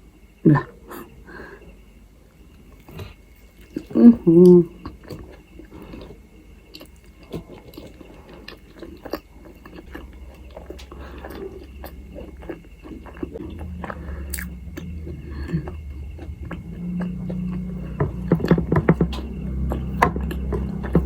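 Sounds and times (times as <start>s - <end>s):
chewing and biting food: 4.8s - 21.0s.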